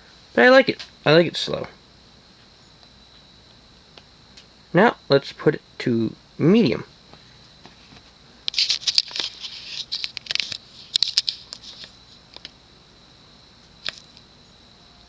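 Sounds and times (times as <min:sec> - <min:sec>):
faint high whine: 0:00.0 - 0:15.0
scratchy handling clicks and rustles: 0:07.9 - 0:12.5.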